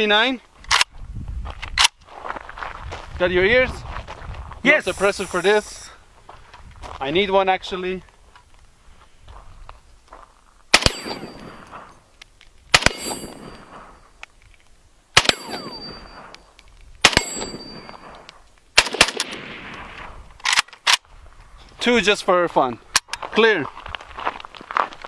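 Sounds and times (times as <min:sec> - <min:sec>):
rifle shots with ringing tail: 0:10.7 - 0:11.9, 0:12.7 - 0:14.0, 0:15.2 - 0:16.3, 0:17.0 - 0:18.2, 0:18.8 - 0:20.0.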